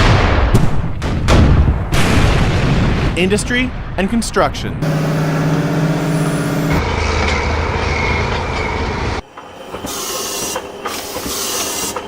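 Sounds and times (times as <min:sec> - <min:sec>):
machine humming: 0:04.8 - 0:07.1
heavy machine rumble and whine: 0:04.8 - 0:12.0
hiss: 0:09.7 - 0:12.0.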